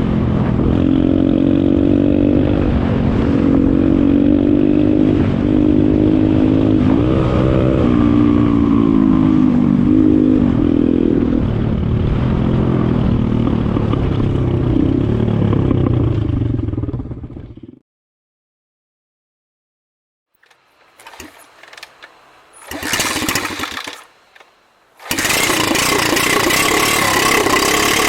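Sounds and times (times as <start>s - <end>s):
small motorcycle engine revving: 22.6s - 24.1s, 25.0s - 28.0s.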